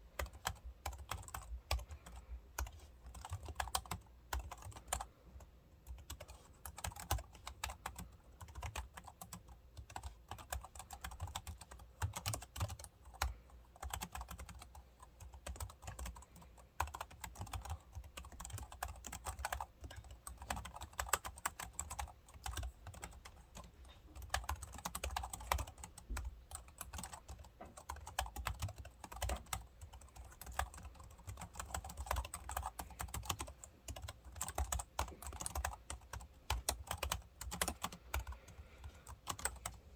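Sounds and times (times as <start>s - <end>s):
keyboard typing clicks: 5.9s - 38.4s, 39.0s - 39.8s.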